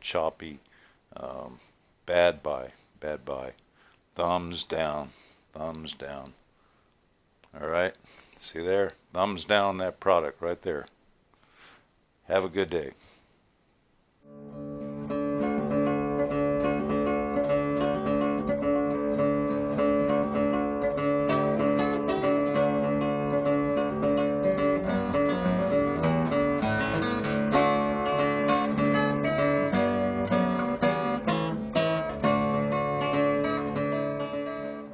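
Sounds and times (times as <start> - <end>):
acoustic guitar playing: 14.2 - 34.9.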